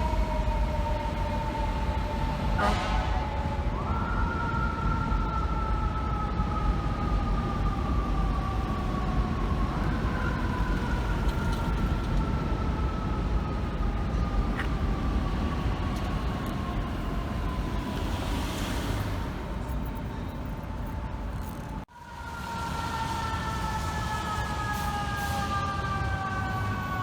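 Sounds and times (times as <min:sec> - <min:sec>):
engines and traffic rumble: 0:00.0 - 0:27.0
fire truck siren: 0:00.0 - 0:27.0.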